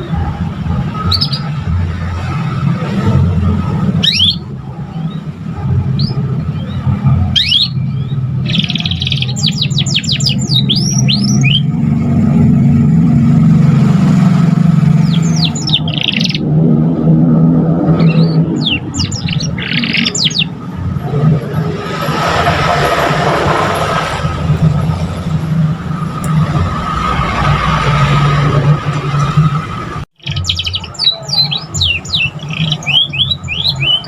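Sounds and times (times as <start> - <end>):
canary singing: 0.0 - 12.0, 14.8 - 17.0, 17.7 - 21.2, 30.2 - 34.0.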